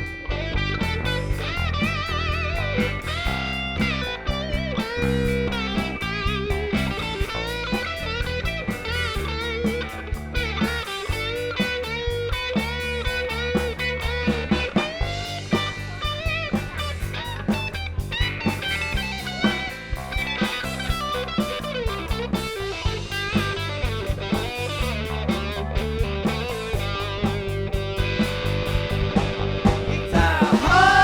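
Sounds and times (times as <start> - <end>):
bass guitar: 0.0 - 31.0
electric guitar lead with bent notes: 0.0 - 31.0
steady drum beat: 0.8 - 31.0.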